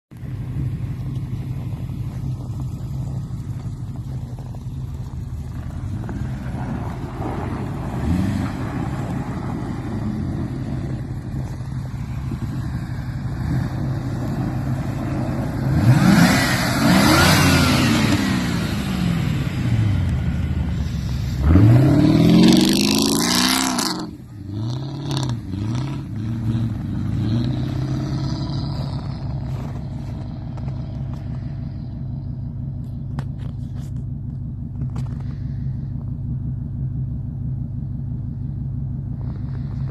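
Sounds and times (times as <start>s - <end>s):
car engine revving: 0.2s - 39.9s.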